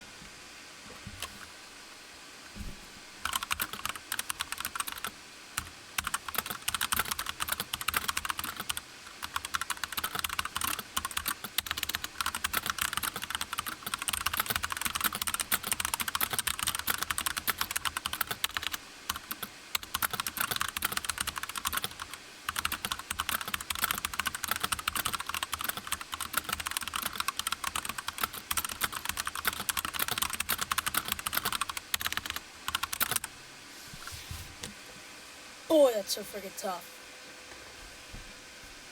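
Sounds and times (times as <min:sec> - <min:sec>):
fast keyboard typing: 0:03.2 - 0:33.3.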